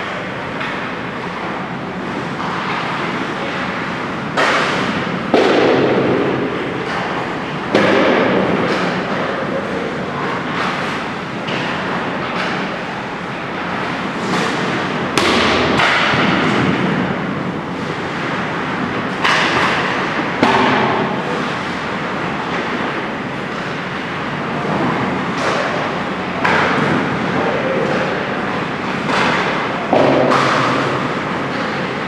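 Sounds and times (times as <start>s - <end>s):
pucks striking boards: 2.3s - 12.7s, 13.6s - 23.8s, 24.6s - 32.0s
sticks hitting pucks: 4.4s - 12.7s, 13.6s - 17.0s, 18.2s - 21.4s, 24.6s - 32.0s.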